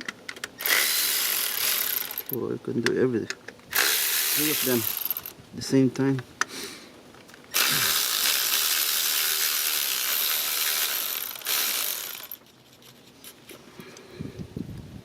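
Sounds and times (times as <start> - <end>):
cordless power tool running: 0.6 - 2.4, 3.7 - 5.3, 7.5 - 12.4.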